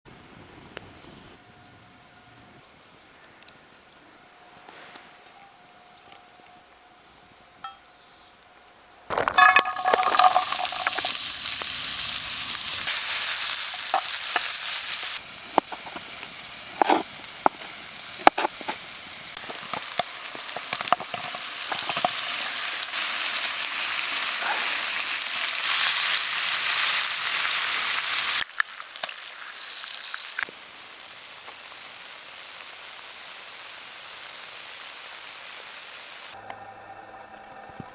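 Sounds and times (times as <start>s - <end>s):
sharp pops and crackles: 9.1s - 23.5s, 27.8s - 30.6s
food sizzling over fire: 9.1s - 37.8s.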